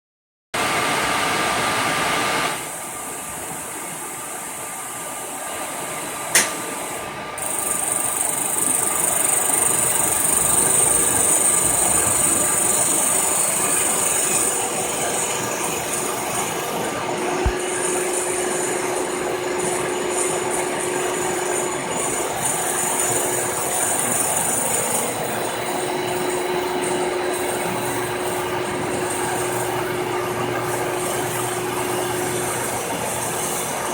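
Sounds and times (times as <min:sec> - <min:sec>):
sharp click: 0:06.4 - 0:06.6
milling machine cutting hiss: 0:07.4 - 0:29.9.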